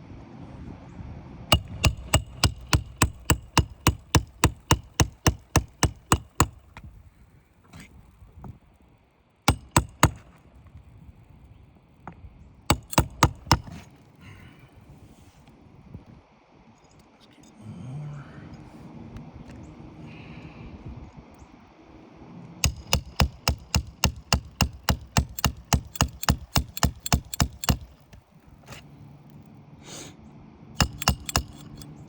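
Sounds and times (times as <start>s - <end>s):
hammer driving roofing nails: 1.5s - 6.8s, 9.5s - 10.4s, 12.7s - 14.0s, 22.6s - 28.8s, 30.8s - 32.0s.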